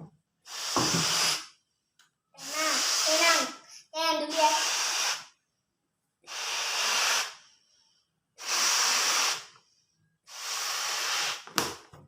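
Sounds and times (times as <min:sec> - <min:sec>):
air hissing into balloon: 0:00.4 - 0:01.6, 0:02.4 - 0:03.6, 0:04.2 - 0:05.4, 0:06.2 - 0:07.7, 0:08.4 - 0:09.7, 0:10.3 - 0:11.8.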